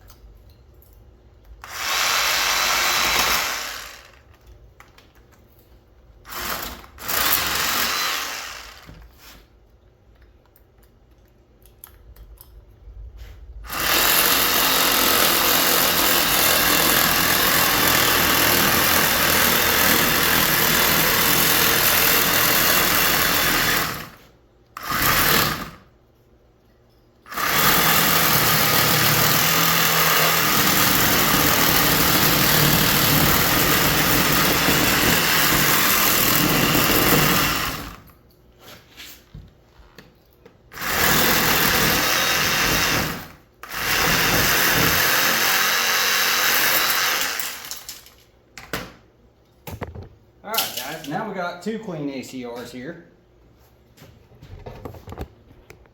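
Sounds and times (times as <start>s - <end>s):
power tool cutting copper: 1.6s - 4.2s, 6.3s - 8.9s, 13.7s - 24.1s, 24.8s - 25.8s, 27.3s - 38.1s, 40.8s - 48.0s.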